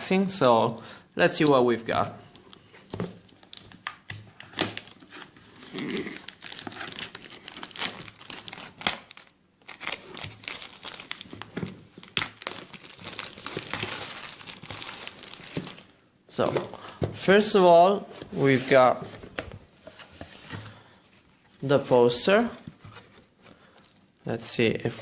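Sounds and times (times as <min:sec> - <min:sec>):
packaging torn and crumpled: 0:03.2 - 0:15.9.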